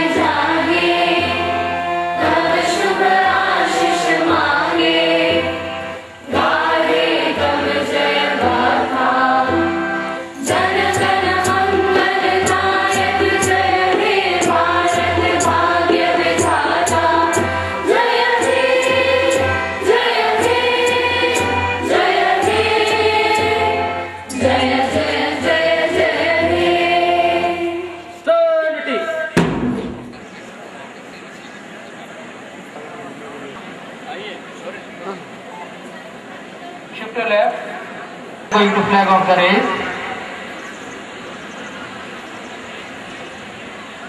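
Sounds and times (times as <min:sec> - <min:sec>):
choir singing: 0:00.0 - 0:28.2
musical accompaniment: 0:00.0 - 0:28.2.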